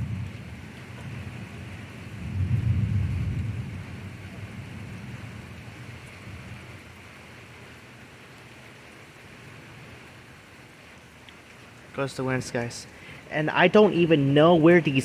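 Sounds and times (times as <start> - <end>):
thunder rumbling: 0.0 - 7.0
steady rain: 0.0 - 15.0.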